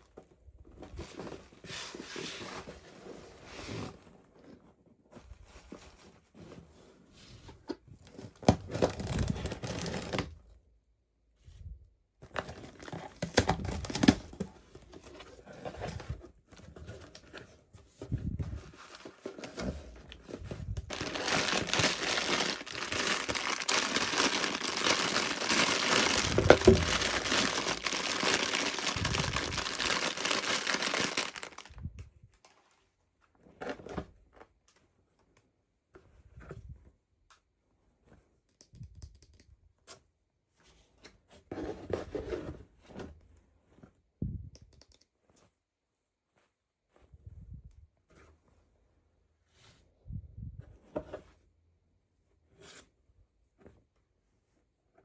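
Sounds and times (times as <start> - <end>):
packaging crinkling and tearing: 20.8 - 31.8.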